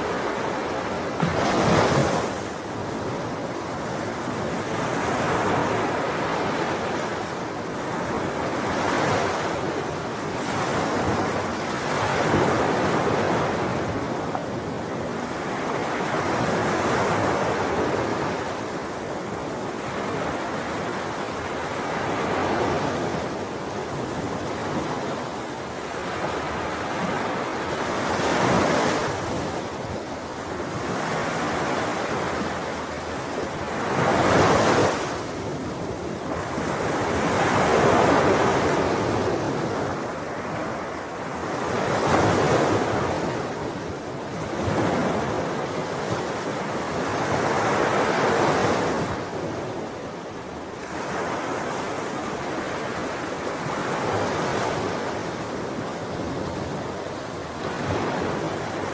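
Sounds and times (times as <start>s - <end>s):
ocean waves breaking on shore: 0.0s - 58.9s.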